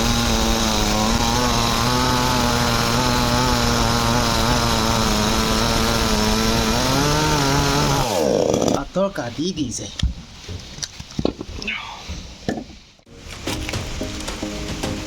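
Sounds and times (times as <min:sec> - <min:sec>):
chainsaw running: 0:00.0 - 0:08.8.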